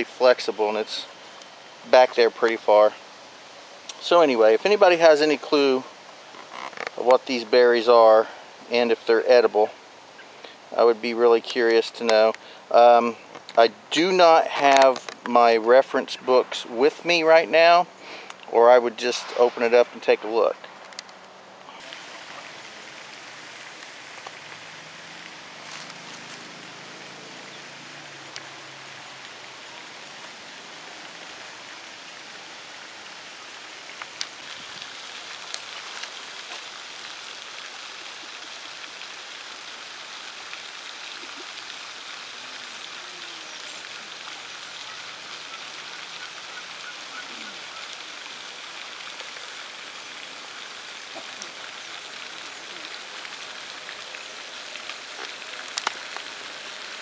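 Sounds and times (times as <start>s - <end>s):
outdoor rushing noise: 19.0s - 20.6s.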